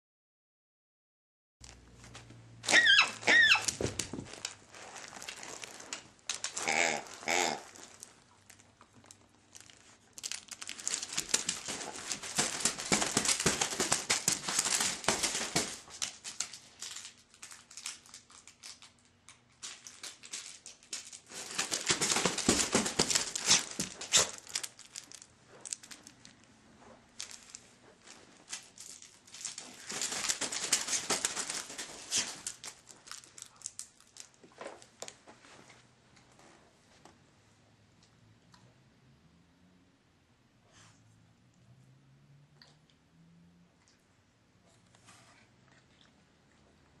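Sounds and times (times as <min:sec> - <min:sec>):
crinkling crumpling noise: 0:01.6 - 0:37.2.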